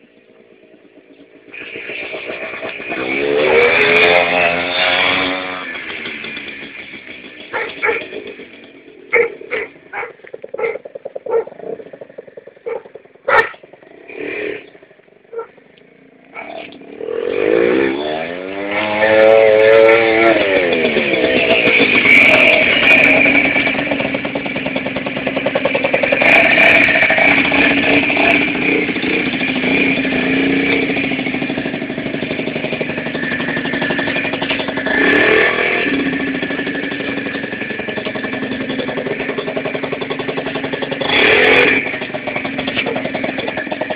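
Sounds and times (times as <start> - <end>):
scooter engine pulling away: 0.0 - 43.9.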